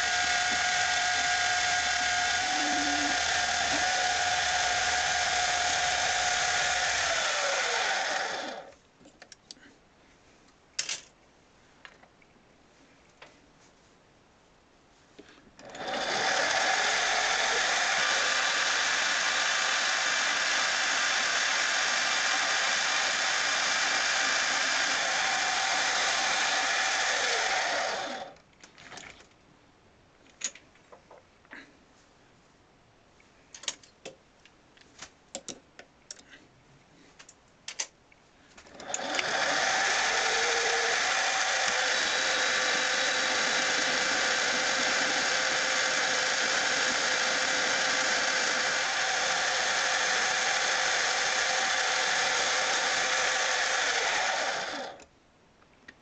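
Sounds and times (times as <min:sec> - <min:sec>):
metal lathe running: 0:00.0 - 0:08.7, 0:15.7 - 0:28.3, 0:38.8 - 0:55.0
small clicks and knocks: 0:30.2 - 0:31.3, 0:33.5 - 0:36.3.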